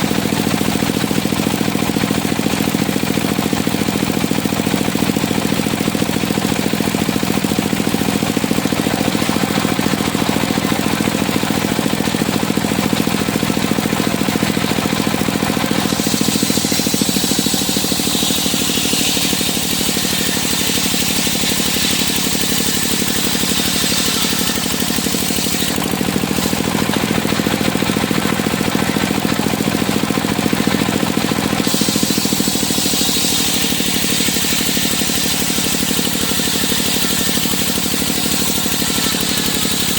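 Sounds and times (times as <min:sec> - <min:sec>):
saw cutting wood whine: 0:00.0 - 0:39.9
sawmill engine running: 0:00.0 - 0:39.9.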